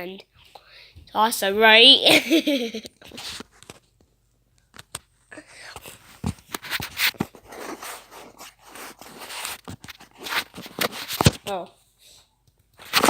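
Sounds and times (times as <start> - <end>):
handling scrapes and rustles: 5.8 - 11.5.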